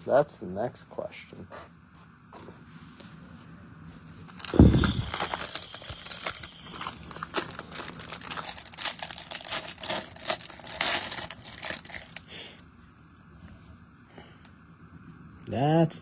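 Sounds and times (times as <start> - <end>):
foil wrapper crinkling: 4.2 - 12.3.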